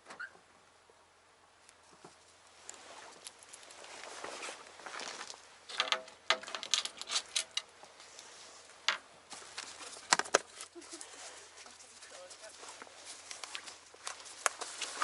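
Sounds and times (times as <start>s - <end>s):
footsteps on stones: 3.6s - 7.7s, 9.3s - 15.0s.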